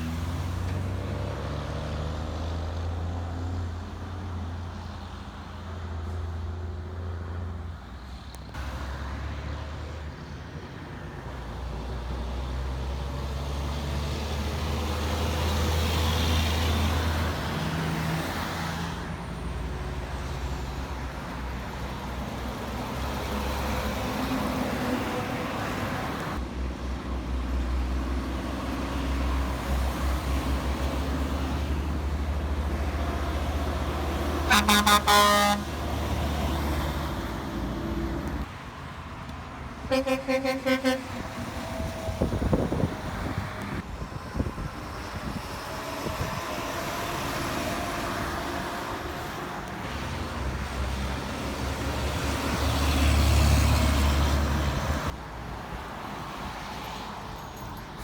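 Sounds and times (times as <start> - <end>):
road traffic passing: 0.0 - 58.0.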